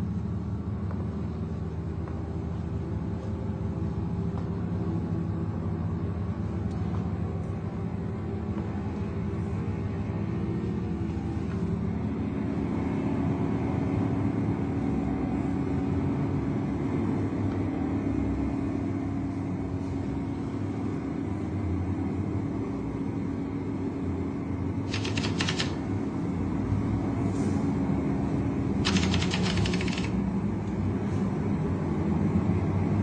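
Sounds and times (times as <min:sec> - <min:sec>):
sharp clicks: 0:24.9 - 0:25.8, 0:28.9 - 0:30.2.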